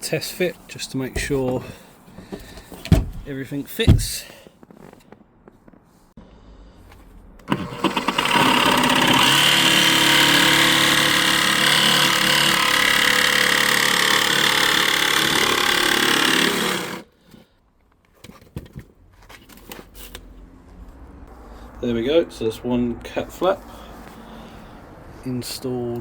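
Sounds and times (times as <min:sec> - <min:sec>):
electric power tool cutting: 0:07.5 - 0:17.1.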